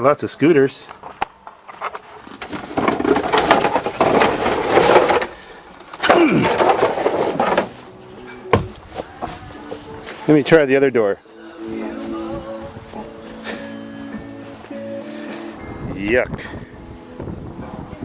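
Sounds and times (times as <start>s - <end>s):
objects being handled: 0.9s - 10.6s.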